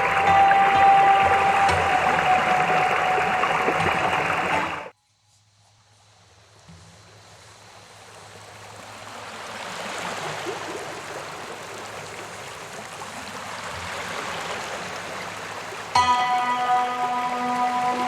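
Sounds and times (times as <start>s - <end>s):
waterfall roaring: 0.0s - 4.9s, 15.9s - 18.0s.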